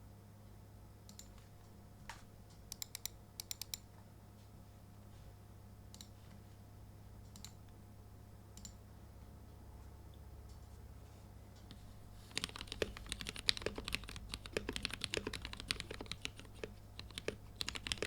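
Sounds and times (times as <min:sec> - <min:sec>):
mechanical keyboard keystrokes: 0:12.3 - 0:18.0.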